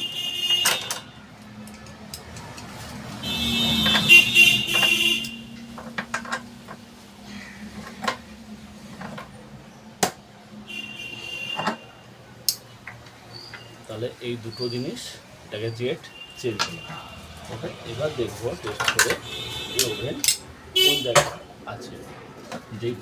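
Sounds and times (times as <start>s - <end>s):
sharp metallic clicks and taps: 0.6s - 2.8s, 12.4s - 13.7s, 19.8s - 20.5s.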